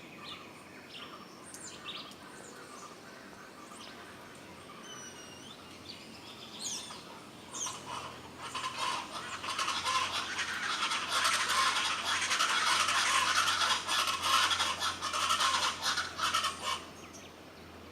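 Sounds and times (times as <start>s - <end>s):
birds chirping: 3.6s - 17.8s.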